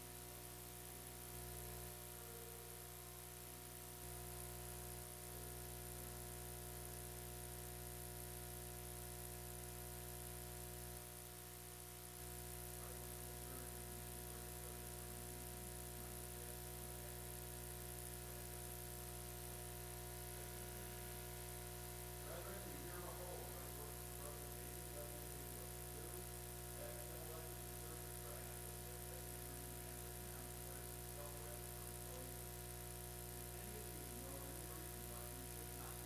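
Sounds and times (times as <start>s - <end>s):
faint steady hum: 0.0s - 36.0s.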